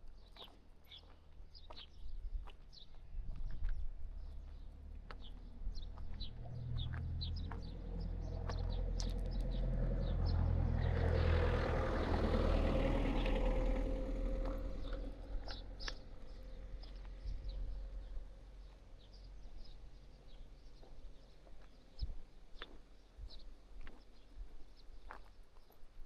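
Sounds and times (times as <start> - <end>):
small birds chirping: 0.0 - 11.3, 14.2 - 26.0
low rumble: 3.2 - 20.7
vehicle passing by: 4.2 - 19.8.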